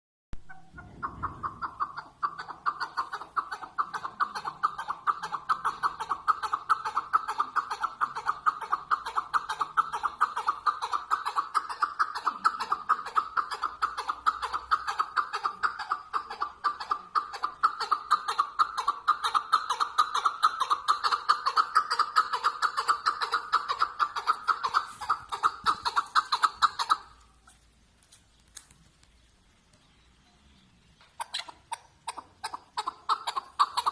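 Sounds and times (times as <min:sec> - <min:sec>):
partridge clucking calls: 0:00.4 - 0:33.9.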